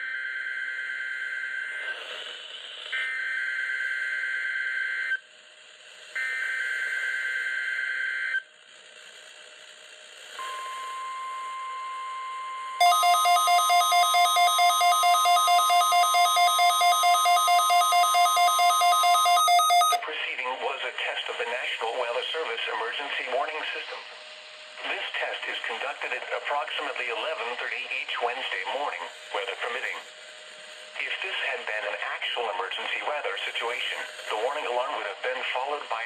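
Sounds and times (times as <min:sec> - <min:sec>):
pulsing radio alert beeps: 0:10.4 - 0:20.0
steady warning alarm tone: 0:10.4 - 0:20.0
radio static: 0:18.6 - 0:24.2, 0:24.8 - 0:30.1, 0:31.0 - 0:36.0.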